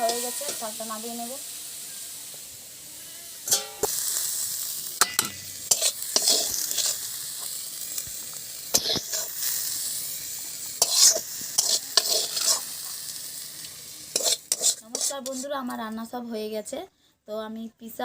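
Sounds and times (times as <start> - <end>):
greens sizzling in hot oil: 0.0 - 16.1
spatula scraping and knocking pan: 3.5 - 3.9, 5.0 - 7.0, 10.8 - 12.7, 14.1 - 15.5.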